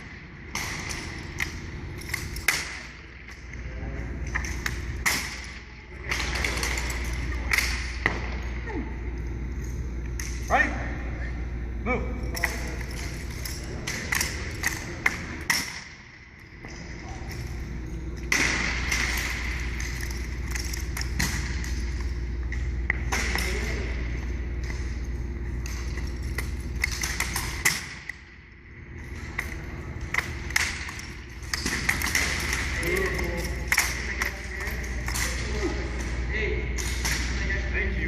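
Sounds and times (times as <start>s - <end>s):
rifles clacking and thudding: 29.2s - 35.4s.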